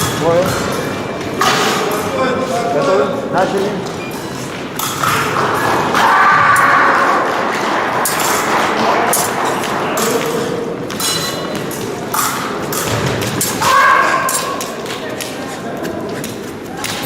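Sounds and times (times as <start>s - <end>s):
fencers' footwork thumps: 10.8s - 17.0s.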